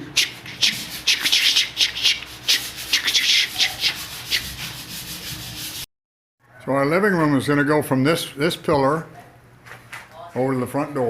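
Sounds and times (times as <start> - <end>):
hand sanding drywall: 0.1 - 5.9.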